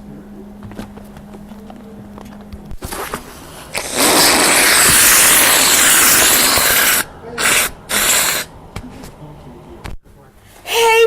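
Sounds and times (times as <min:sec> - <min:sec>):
loud harsh hissing: 0:03.7 - 0:08.5.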